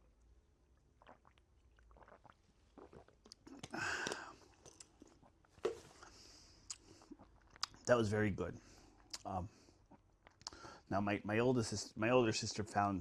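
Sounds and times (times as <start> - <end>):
person drinking: 0.8 - 7.8, 8.7 - 10.9
breathy sound: 3.7 - 4.5.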